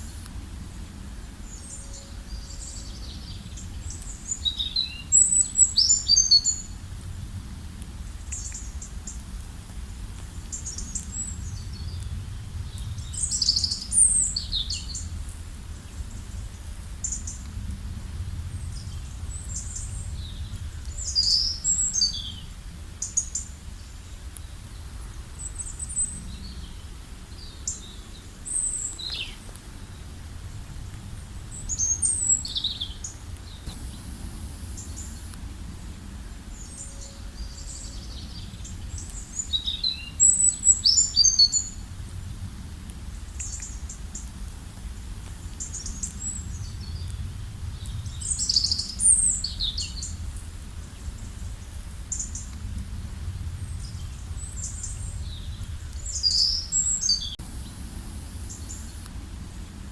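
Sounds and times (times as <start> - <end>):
songbirds chirping and trilling: 0.0 - 6.8, 10.4 - 15.2, 18.3 - 41.8, 53.2 - 59.2
low rumble of wind or water: 0.0 - 59.9.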